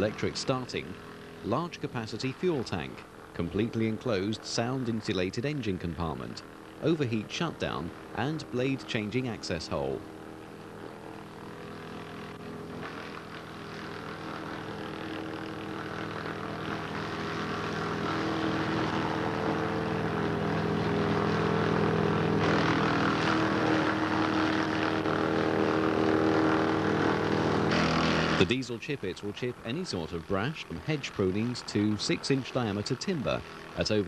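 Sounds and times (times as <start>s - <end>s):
diesel engine running steadily: 0.0s - 34.0s
harsh noisy grinding: 6.5s - 28.8s.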